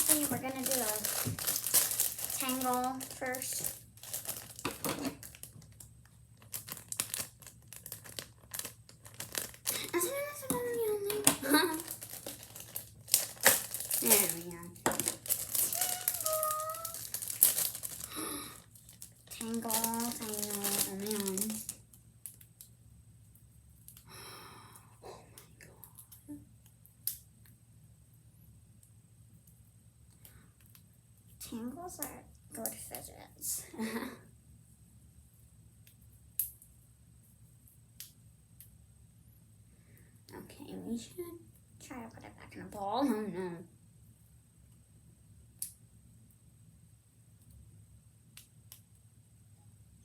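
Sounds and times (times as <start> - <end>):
plastic rustling: 0.0 - 22.0
packaging crinkling: 0.0 - 22.4.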